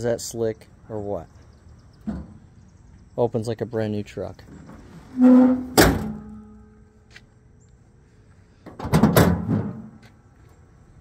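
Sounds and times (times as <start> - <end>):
metal tailgate clanking: 2.0 - 2.6, 4.5 - 6.8, 8.7 - 10.0.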